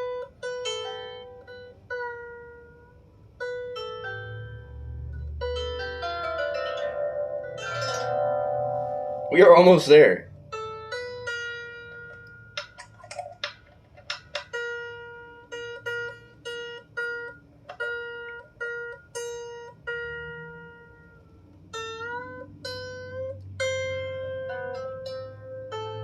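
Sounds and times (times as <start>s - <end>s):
harp string plucked: 5.5s - 10.0s.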